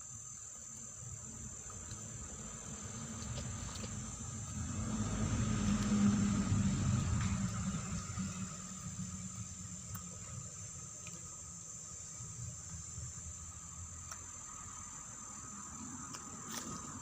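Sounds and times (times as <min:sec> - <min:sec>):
insects chirring: 0:00.0 - 0:17.0
low rumble: 0:02.4 - 0:11.8.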